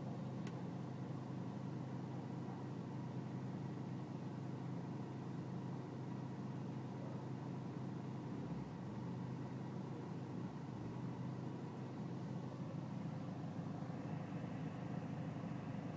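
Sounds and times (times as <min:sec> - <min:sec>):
diesel engine idling: 0:00.0 - 0:15.9.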